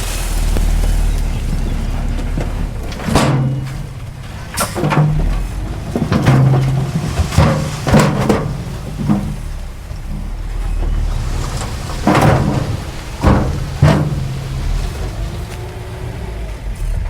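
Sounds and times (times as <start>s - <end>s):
heavy diesel engine running: 0.0s - 17.0s
sharp metallic clanks: 2.9s - 9.7s.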